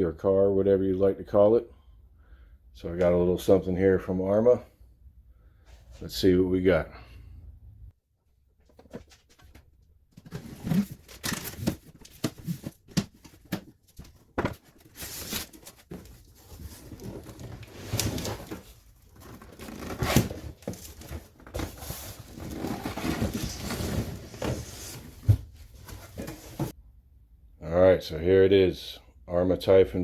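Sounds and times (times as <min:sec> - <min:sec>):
cardboard rustling and tearing: 0:10.2 - 0:26.7.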